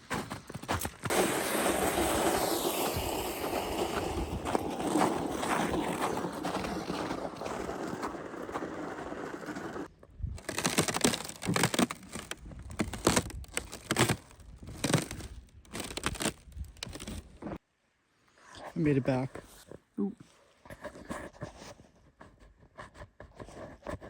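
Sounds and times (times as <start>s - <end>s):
footsteps crunching through snow: 0.0s - 17.6s.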